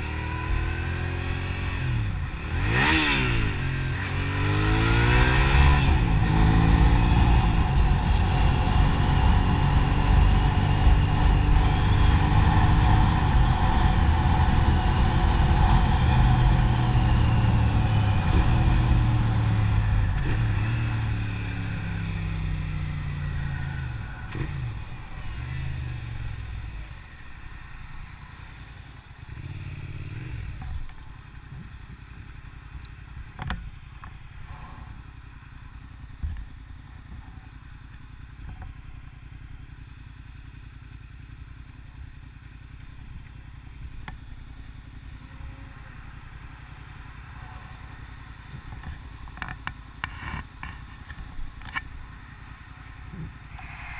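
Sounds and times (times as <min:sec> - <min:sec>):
vehicle engine accelerating: 0:00.0 - 0:31.7, 0:42.5 - 0:53.9.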